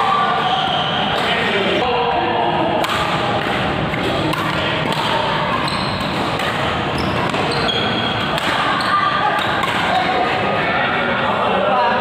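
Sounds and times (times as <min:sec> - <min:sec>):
people's voices echoing: 0:00.0 - 0:12.0
rackets and feet thudding on court: 0:02.8 - 0:10.2.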